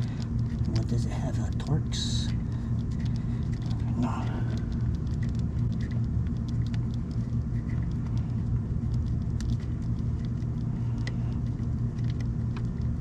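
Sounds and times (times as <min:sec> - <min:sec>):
low mechanical rumble: 0:00.0 - 0:13.0.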